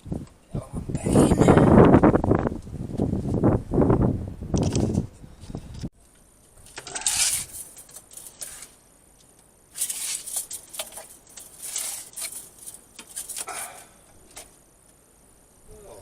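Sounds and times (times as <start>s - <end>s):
scraping and rustling: 6.5s - 14.6s.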